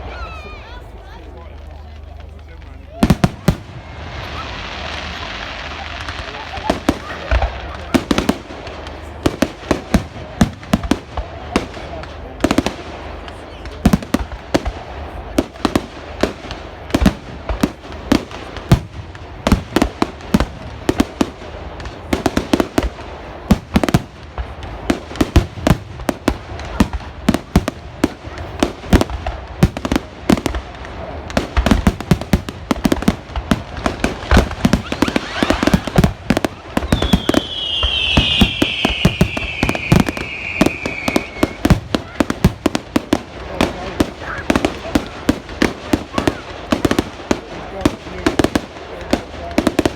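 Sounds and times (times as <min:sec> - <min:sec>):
fireworks bangs and crackles: 0:00.0 - 0:49.9
whistling firework: 0:02.9 - 0:09.2, 0:33.0 - 0:43.2.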